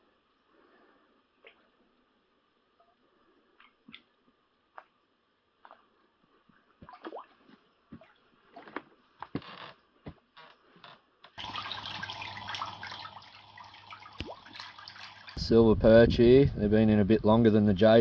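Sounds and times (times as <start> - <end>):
water drips and plops: 6.8 - 8.7, 11.4 - 15.4
trickling running water: 11.3 - 15.6.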